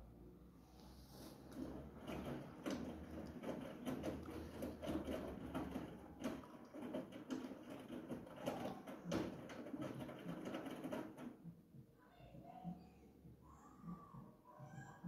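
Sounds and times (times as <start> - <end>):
wet laundry tumbling: 1.4 - 11.3
washing machine drum turning: 1.4 - 11.5.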